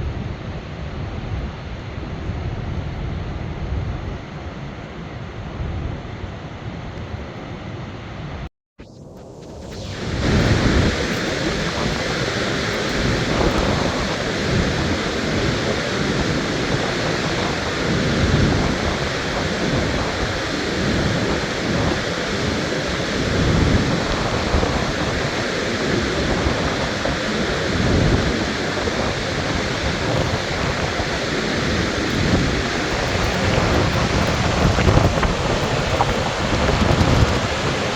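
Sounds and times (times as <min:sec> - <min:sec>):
waterfall rushing: 0:09.8 - 0:37.9.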